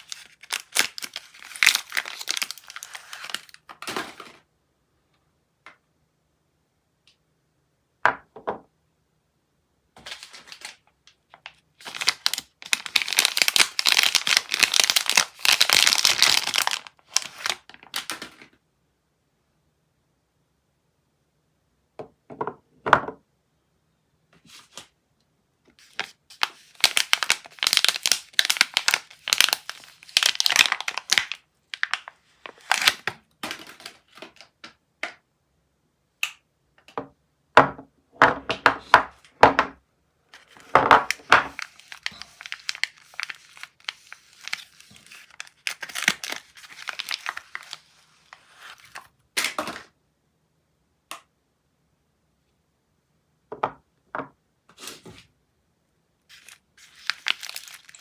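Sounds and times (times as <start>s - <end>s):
wrappers tearing and crinkling: 0.0s - 4.2s, 11.8s - 18.1s, 25.8s - 34.4s, 40.4s - 49.1s, 56.3s - 58.0s.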